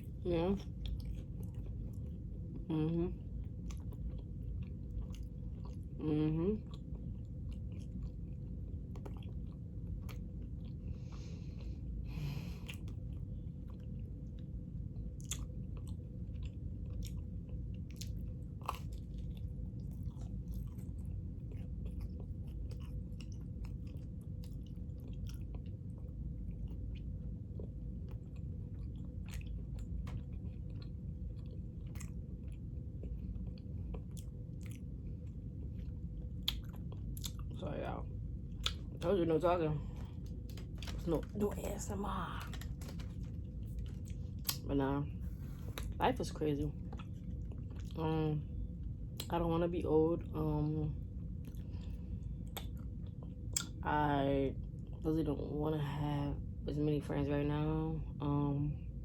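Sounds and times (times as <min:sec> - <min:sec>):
person chewing food: 0:00.0 - 0:02.5, 0:03.2 - 0:06.0, 0:06.6 - 0:37.6, 0:38.4 - 0:39.1, 0:39.9 - 0:41.3, 0:42.4 - 0:44.6, 0:45.2 - 0:46.0, 0:46.8 - 0:48.0, 0:51.2 - 0:53.8
steady low hum: 0:00.0 - 0:59.0.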